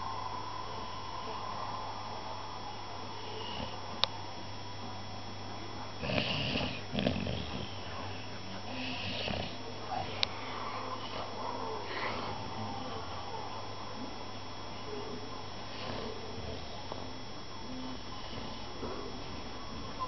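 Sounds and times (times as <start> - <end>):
puppy snoring: 3.2 - 4.0, 6.0 - 13.1, 15.6 - 16.8.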